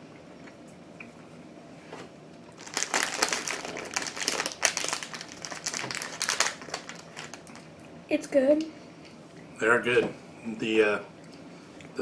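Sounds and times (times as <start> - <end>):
plastic bag crinkling: 2.6 - 7.7.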